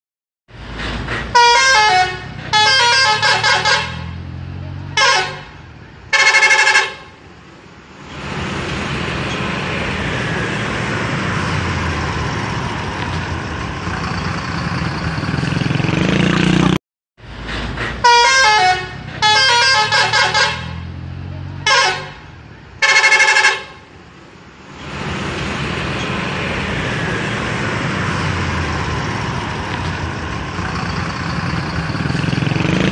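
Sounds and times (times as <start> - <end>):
bus engine and road noise: 0.5 - 32.9
musical bus horn: 1.3 - 7.2, 18.0 - 23.9.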